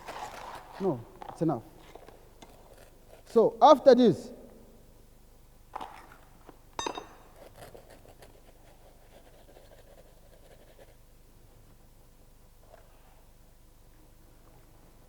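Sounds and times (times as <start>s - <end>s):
metal tool clinking: 6.8s - 7.4s.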